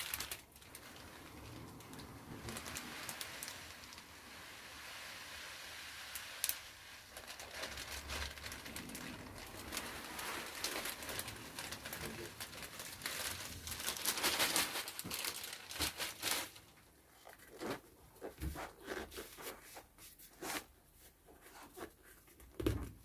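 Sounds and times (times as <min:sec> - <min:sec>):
polystyrene beads pouring: 0:00.0 - 0:16.7.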